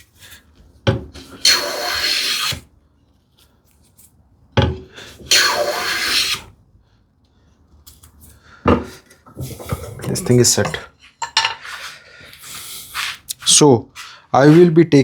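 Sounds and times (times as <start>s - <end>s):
hand plane cutting wood: 1.2s - 2.6s, 5.3s - 6.5s.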